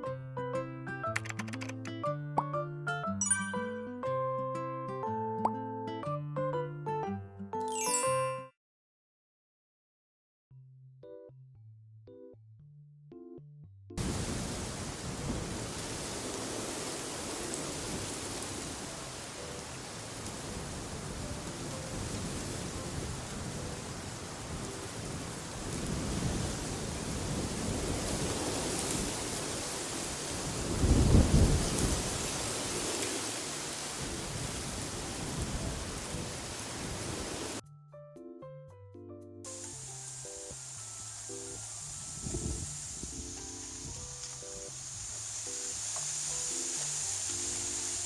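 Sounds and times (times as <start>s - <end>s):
wind rushing with rumbling gusts: 14.0s - 37.6s, 42.1s - 45.5s.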